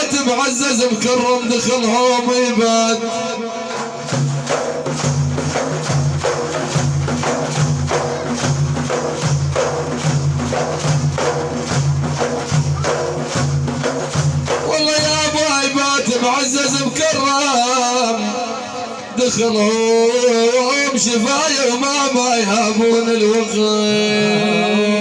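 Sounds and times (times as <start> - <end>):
frame drum with jingles: 3.7 - 17.2
person singing: 23.8 - 25.0.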